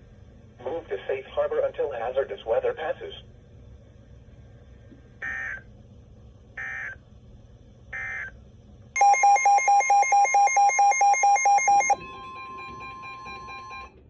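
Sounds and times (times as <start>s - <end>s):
warbling digital code bursts: 9.0s - 12.0s
rapidly pulsing beep alarm: 9.0s - 13.9s.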